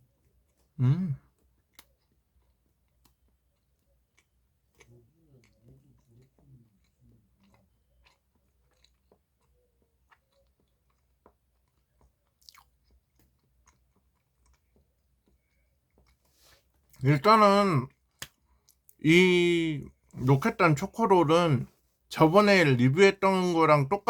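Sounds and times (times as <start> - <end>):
faint chewing: 0.0 - 19.1
small mouth clicks: 12.4 - 12.7.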